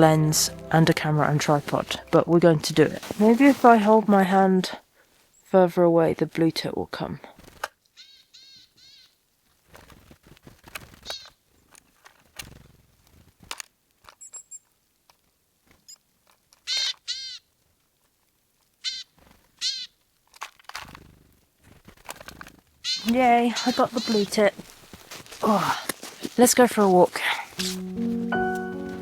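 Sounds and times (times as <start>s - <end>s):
soft rustling: 0.0s - 5.4s, 20.2s - 29.0s
small birds chirping: 8.0s - 9.2s, 11.0s - 11.7s, 22.8s - 29.0s.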